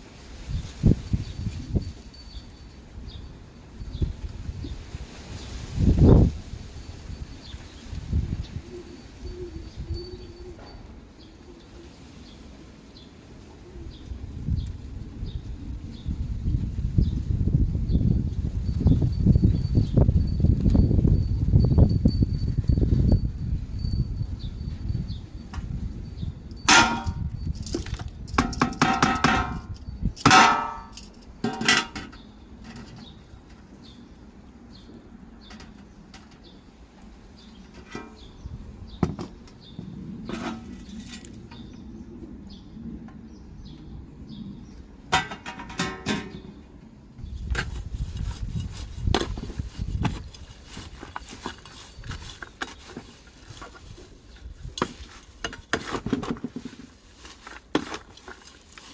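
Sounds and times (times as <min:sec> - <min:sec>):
ringing metal clangs: 0:10.0 - 0:11.0, 0:26.6 - 0:32.2
kitchen utensils knocking and clinking: 0:26.7 - 0:27.8.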